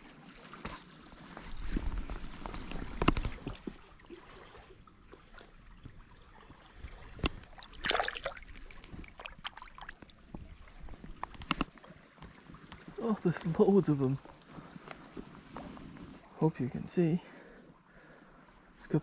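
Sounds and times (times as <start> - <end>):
river water sloshing: 0.0 - 16.4
rushing splash: 7.6 - 10.0.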